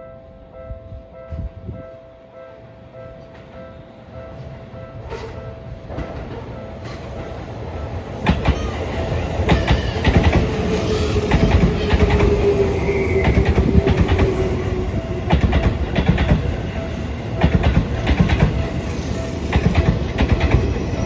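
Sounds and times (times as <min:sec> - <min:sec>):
train whine falling in pitch: 0:08.2 - 0:21.0
train wheels clacking over rail joints: 0:09.4 - 0:12.5, 0:15.3 - 0:16.6, 0:17.4 - 0:20.8.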